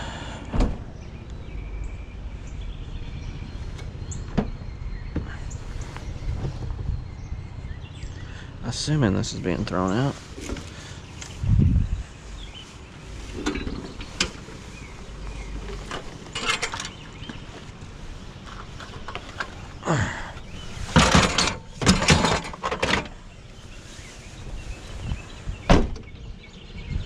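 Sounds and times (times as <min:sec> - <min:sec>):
items scraping and clattering: 0:13.2 - 0:17.8, 0:18.4 - 0:19.8, 0:20.5 - 0:23.2.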